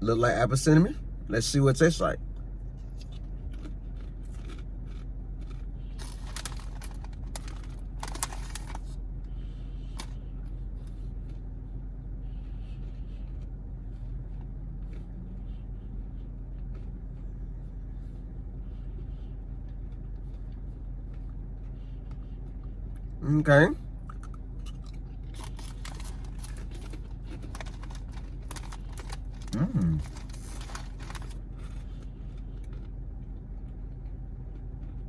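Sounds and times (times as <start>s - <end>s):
low hum: 0.0s - 35.0s
rice crisps crunching: 3.0s - 9.0s, 24.1s - 32.9s.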